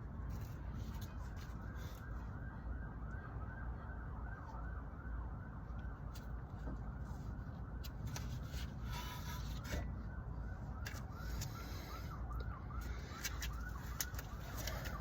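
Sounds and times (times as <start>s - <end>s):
siren yelping: 9.2s - 15.0s.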